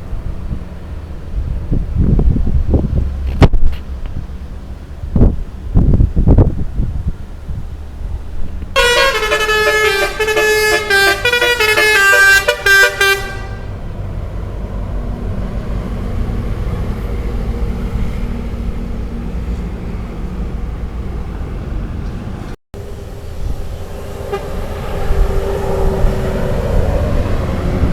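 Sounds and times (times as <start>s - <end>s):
musical air horn melody: 8.8s - 13.8s, 24.2s - 25.2s.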